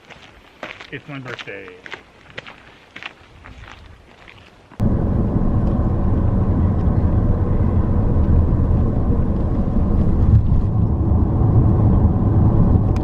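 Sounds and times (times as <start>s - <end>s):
car driving rumble: 4.8s - 13.0s.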